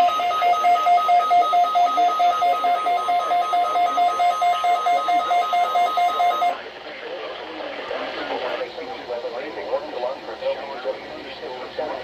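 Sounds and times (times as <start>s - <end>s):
rapid electronic alarm beeps: 0.0s - 6.6s.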